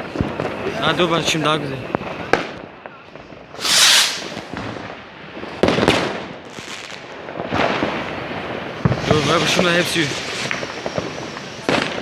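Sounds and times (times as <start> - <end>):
hissing firework crackle: 3.5 - 5.5, 6.5 - 12.0
fireworks bangs: 3.6 - 5.0.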